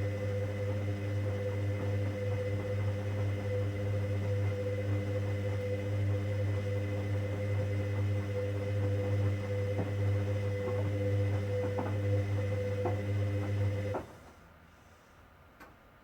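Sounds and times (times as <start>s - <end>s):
washing machine humming: 0.0s - 14.5s.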